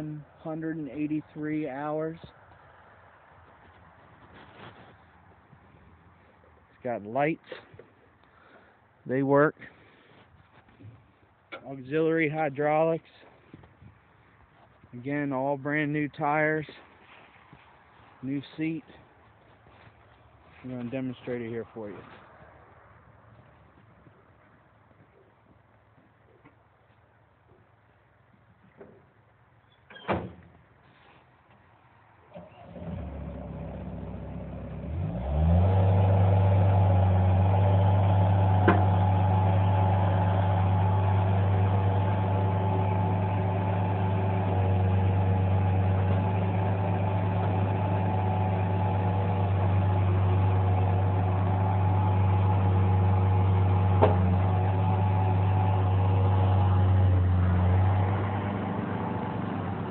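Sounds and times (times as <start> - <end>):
diesel engine cranking and running: 32.3 - 59.9.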